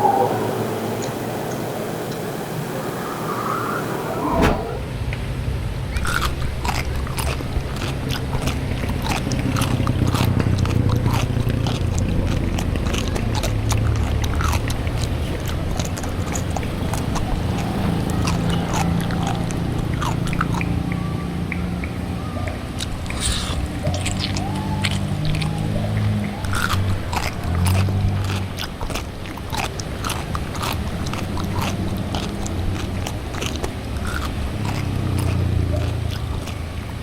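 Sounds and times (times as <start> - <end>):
steady low hum: 0.0 - 5.1
chewing and biting: 6.0 - 21.0, 22.5 - 37.0
wet mouth clicks: 6.0 - 21.0, 22.8 - 37.0.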